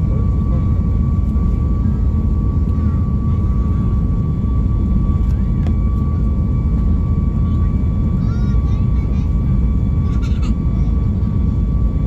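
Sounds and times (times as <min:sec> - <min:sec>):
airliner engine rumble: 0:00.0 - 0:12.0.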